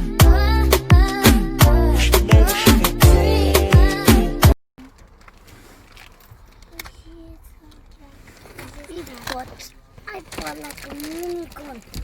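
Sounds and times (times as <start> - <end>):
deep sliding kick drums: 0.0 - 4.5.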